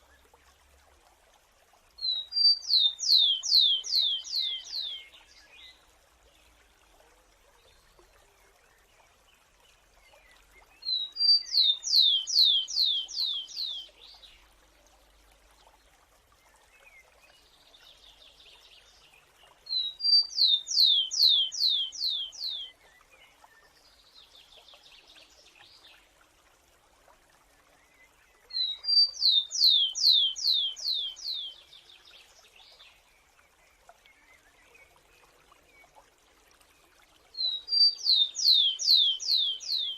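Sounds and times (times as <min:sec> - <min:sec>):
sparrow whistling song: 0:19.7 - 0:22.7, 0:37.4 - 0:39.9.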